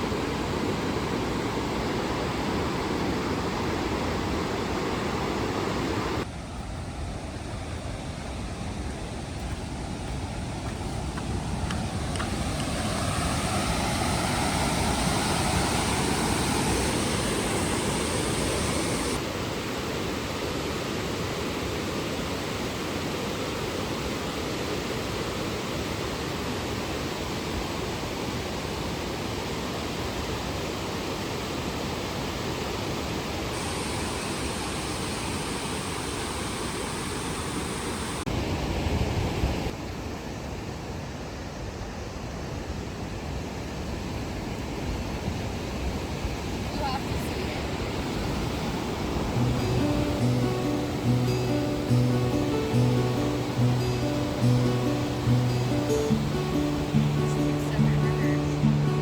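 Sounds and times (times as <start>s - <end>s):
waterfall rushing: 0.0s - 6.2s, 11.3s - 29.2s, 46.7s - 59.0s.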